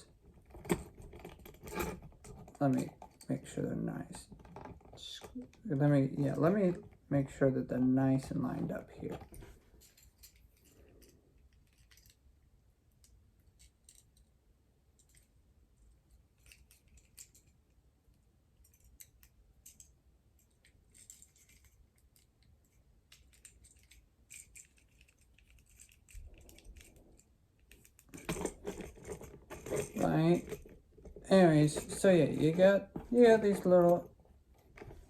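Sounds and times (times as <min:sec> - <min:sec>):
plastic toy parts clicking: 0:18.6 - 0:34.0.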